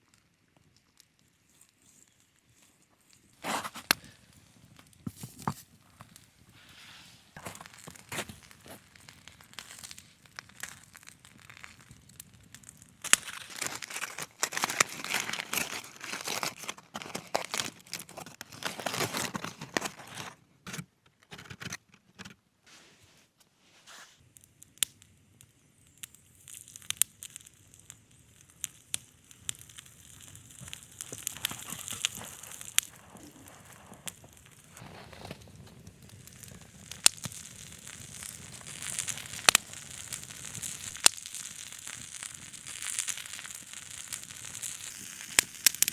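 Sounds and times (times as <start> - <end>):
crinkling and tearing handling noise: 1.5 - 10.0, 13.0 - 22.5, 30.0 - 45.9.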